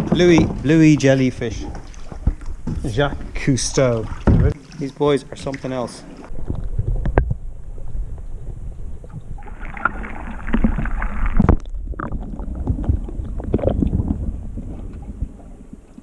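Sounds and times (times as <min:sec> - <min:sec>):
kayak paddle splashing in water: 0:00.0 - 0:07.2, 0:09.2 - 0:16.0
wind rumble on microphone: 0:06.3 - 0:09.6, 0:10.6 - 0:16.0.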